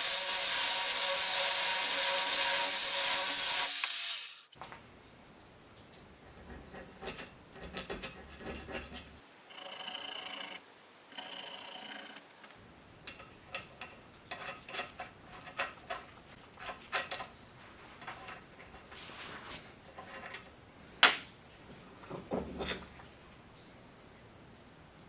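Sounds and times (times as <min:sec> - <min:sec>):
hand tool scraping and tapping: 0:06.2 - 0:21.2
rasping like filing: 0:08.1 - 0:12.3.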